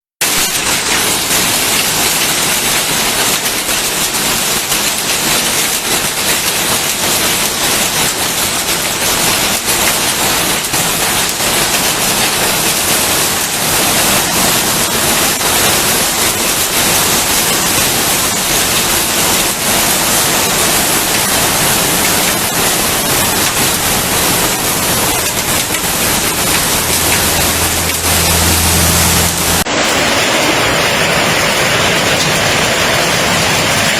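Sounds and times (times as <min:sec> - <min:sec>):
heavy rain pouring: 0:00.2 - 0:33.9
low hum: 0:25.2 - 0:29.7.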